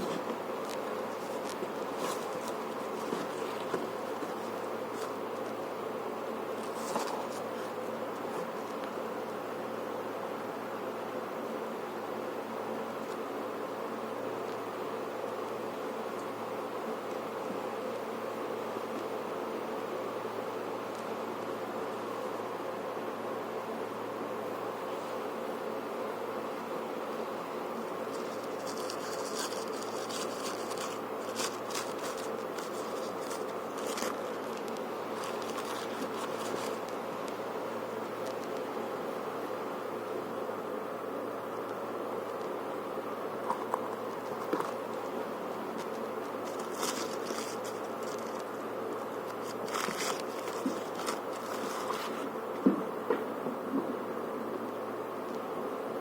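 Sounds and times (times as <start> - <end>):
crisp rustling: 0.0 - 5.7, 6.5 - 8.8, 27.8 - 37.0, 43.4 - 52.3
steady buzzing hum: 0.0 - 56.0.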